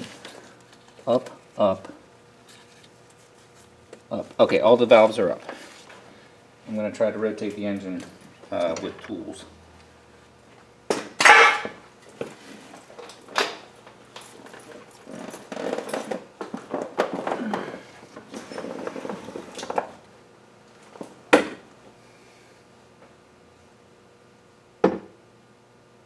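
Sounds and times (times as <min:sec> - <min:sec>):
metal tools clanking and scraping: 0:11.2 - 0:13.2.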